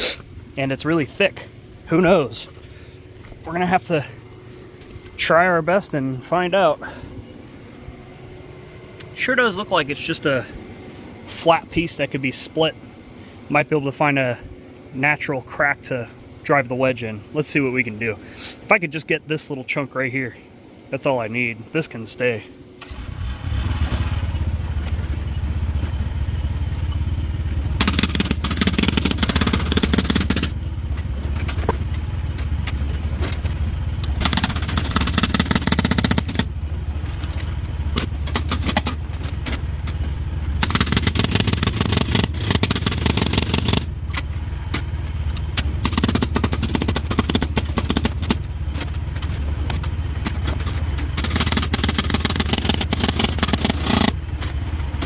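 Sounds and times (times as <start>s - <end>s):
excavator engine running: 0.0s - 18.9s, 22.2s - 55.0s
hydraulic breaker hammering rock: 27.8s - 30.6s, 34.2s - 36.5s, 38.0s - 39.0s, 40.6s - 43.9s, 45.8s - 48.4s, 51.2s - 54.2s.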